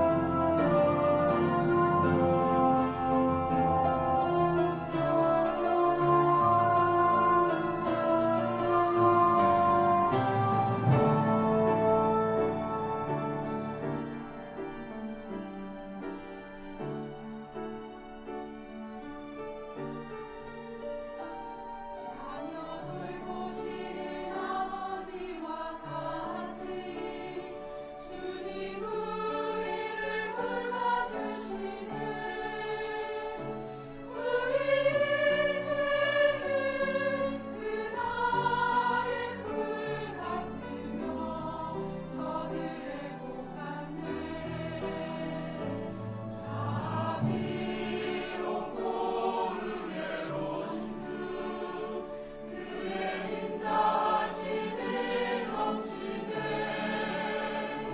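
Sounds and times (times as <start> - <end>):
choir singing: 0.0 - 19.0, 19.7 - 57.9.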